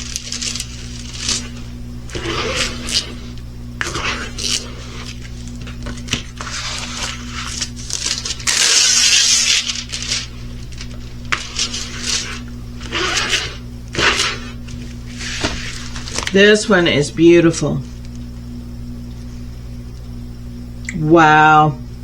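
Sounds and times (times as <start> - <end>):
plastic packaging crinkling: 0.0 - 16.6
steady low hum: 0.0 - 22.0.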